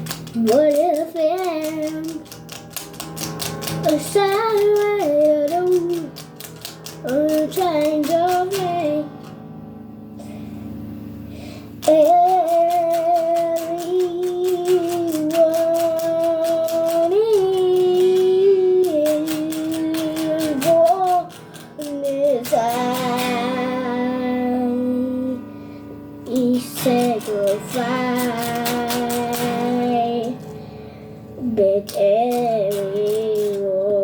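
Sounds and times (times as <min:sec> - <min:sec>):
plucked-string accompaniment: 0:00.0 - 0:34.0
high voice singing: 0:26.3 - 0:30.5, 0:31.4 - 0:34.0.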